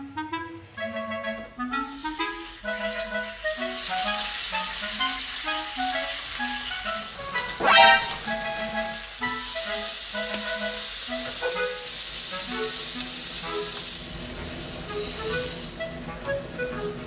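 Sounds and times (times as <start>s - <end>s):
background music: 0.0s - 12.0s
food sizzling in a frying pan: 1.7s - 7.6s, 8.5s - 15.8s
short loud rising-pitch sound: 7.6s - 8.5s.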